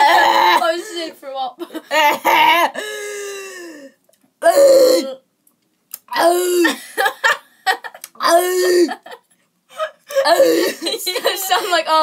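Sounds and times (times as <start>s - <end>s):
person groaning and gagging: 0.0s - 1.1s, 1.9s - 5.2s, 6.1s - 6.8s, 8.2s - 9.1s, 10.1s - 10.9s.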